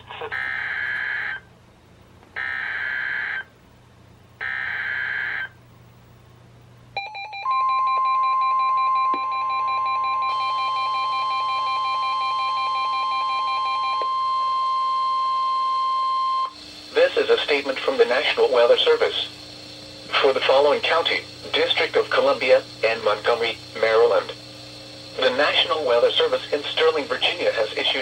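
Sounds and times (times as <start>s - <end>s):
warbling alarm: 0.3s - 1.5s, 2.4s - 3.5s, 4.4s - 5.6s, 7.0s - 28.0s
steady warning alarm tone: 2.4s - 3.5s, 4.4s - 5.6s, 7.0s - 28.0s
harsh buzzy data bursts: 4.4s - 5.6s, 10.3s - 28.0s.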